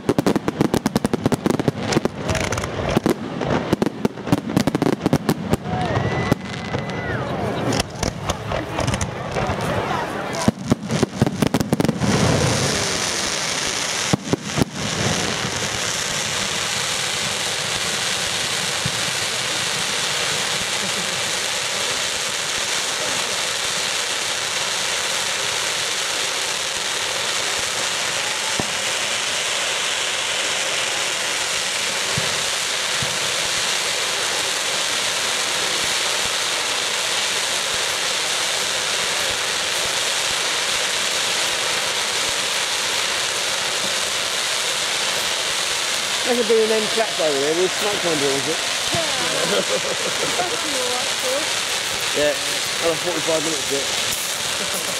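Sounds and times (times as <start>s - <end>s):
fireworks bangs: 0.0s - 54.9s
fireworks hiss: 0.0s - 54.9s.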